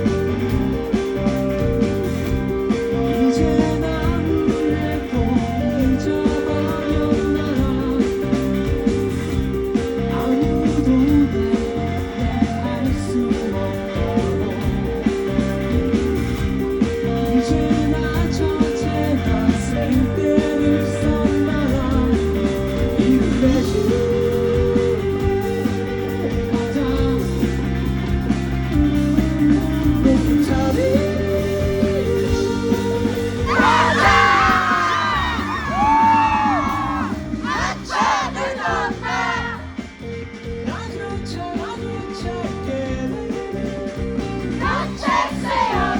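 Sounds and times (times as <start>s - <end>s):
live rock band playing: 0.0s - 45.9s
person singing lead vocal: 2.7s - 16.0s, 16.8s - 27.9s, 29.4s - 39.7s, 40.6s - 45.9s
wailing guitar line: 30.4s - 39.7s, 44.6s - 45.9s.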